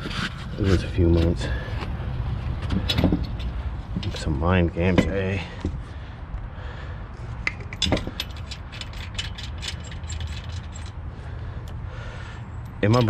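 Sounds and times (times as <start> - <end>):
ratchet wrench clicking: 7.4 - 11.0.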